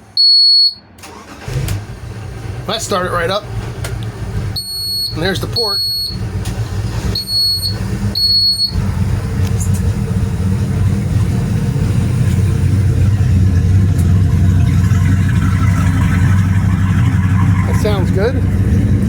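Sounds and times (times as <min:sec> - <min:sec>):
boat engines idling: 0:01.0 - 0:19.0
high electronic beeps: 0:04.6 - 0:06.2, 0:07.2 - 0:08.8.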